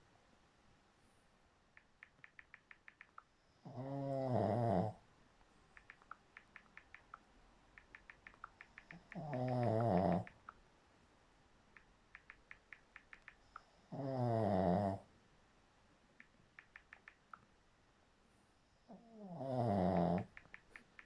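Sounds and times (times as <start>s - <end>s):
faint quick clicks: 1.8s - 3.3s, 5.8s - 10.6s, 11.7s - 13.7s, 16.2s - 17.5s, 19.9s - 21.0s
loud wavering snore: 3.7s - 5.0s, 13.9s - 15.0s, 19.0s - 20.3s.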